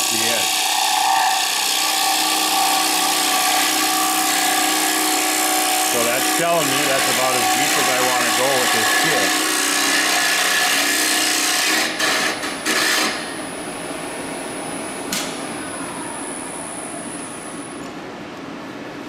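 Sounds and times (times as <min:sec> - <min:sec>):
tool scraping wood on lathe: 0:00.0 - 0:13.2
wood lathe high whine: 0:00.0 - 0:13.6.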